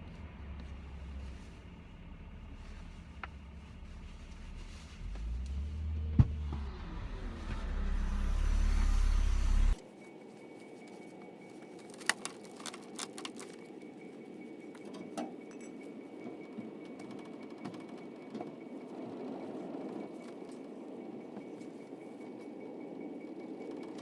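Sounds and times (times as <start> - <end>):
motor vehicle rumble: 0.0 - 9.8.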